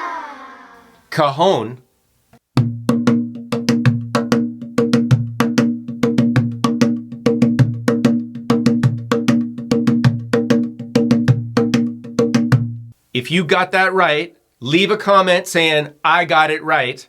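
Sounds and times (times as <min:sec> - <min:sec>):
cajon rhythmic groove: 0:02.4 - 0:13.0.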